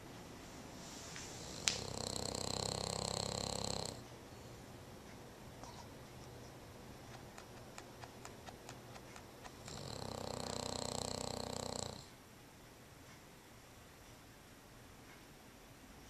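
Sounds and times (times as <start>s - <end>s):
dog snoring: 1.3s - 4.1s, 7.4s - 12.1s.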